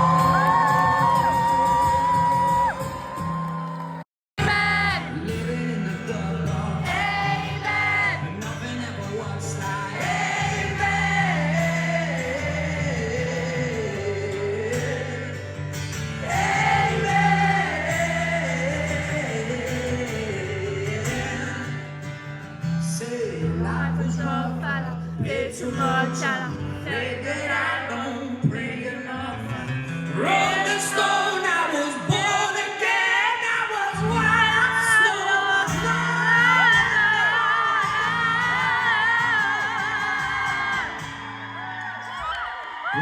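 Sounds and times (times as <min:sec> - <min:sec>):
acoustic guitar: 0:00.0 - 0:43.0
person singing: 0:04.4 - 0:15.5, 0:23.0 - 0:29.6.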